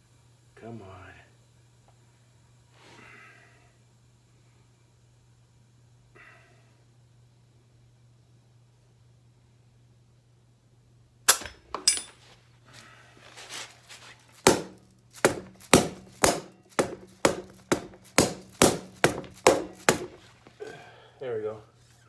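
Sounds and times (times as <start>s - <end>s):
rubber mallet striking tire: 14.4s - 20.3s.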